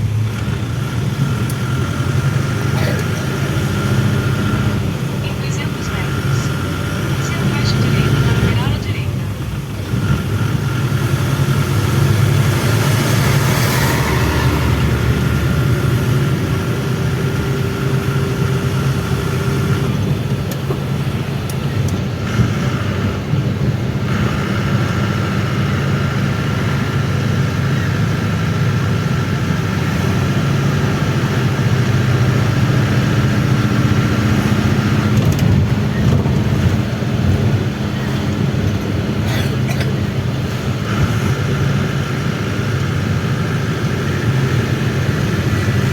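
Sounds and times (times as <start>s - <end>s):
bus engine and road drone: 0.0s - 45.9s
thin whine: 11.8s - 17.2s.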